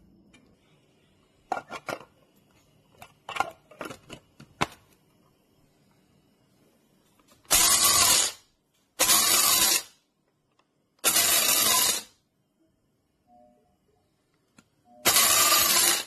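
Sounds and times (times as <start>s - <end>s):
electric coffee grinder running: 11.1s - 12.0s, 15.1s - 16.0s.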